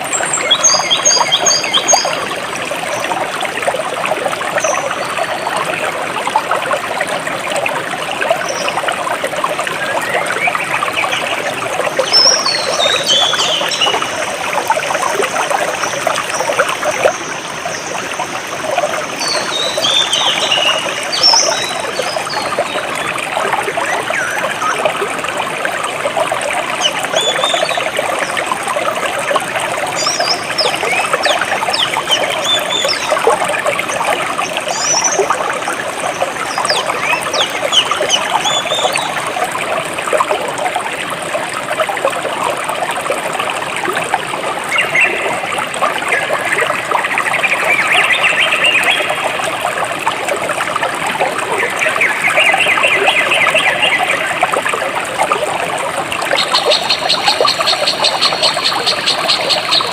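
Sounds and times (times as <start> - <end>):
stream trickling and splashing: 0.0 - 59.9
birds chirping: 51.5 - 54.4, 56.4 - 59.9.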